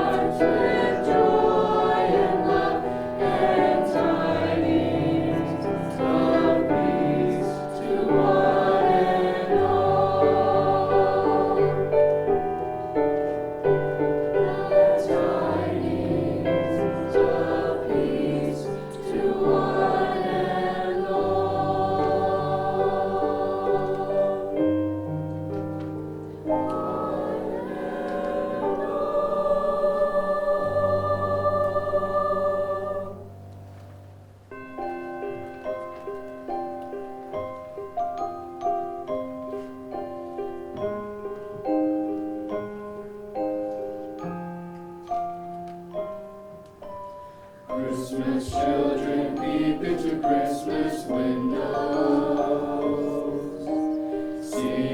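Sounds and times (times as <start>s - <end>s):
choir singing in harmony: 0.0s - 33.6s, 47.2s - 54.9s.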